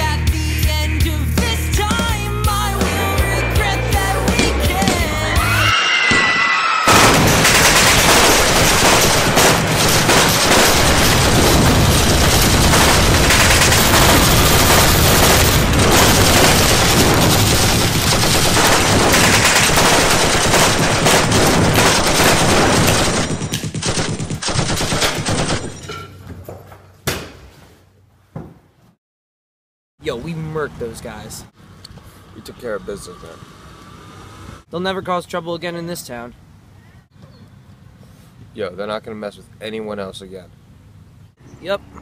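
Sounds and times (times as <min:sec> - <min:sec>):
scattered gunshots: 0:06.8 - 0:25.8
rapid machine gun fire: 0:06.9 - 0:25.8.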